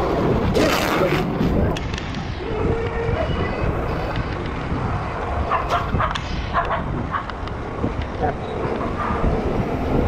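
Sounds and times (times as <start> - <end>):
dog barking: 5.5 - 7.3.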